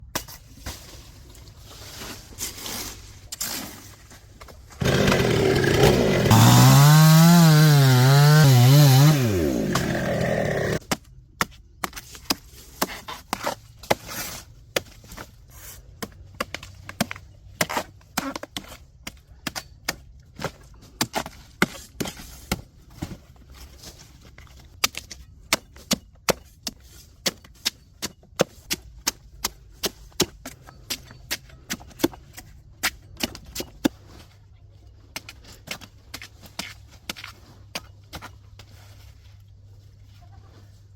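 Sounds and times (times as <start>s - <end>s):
chainsaw cutting wood: 4.8s - 10.8s.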